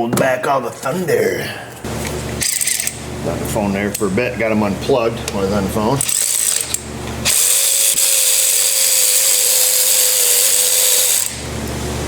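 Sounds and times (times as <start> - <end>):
power ratchet spinning: 2.4 - 3.0, 6.0 - 11.4.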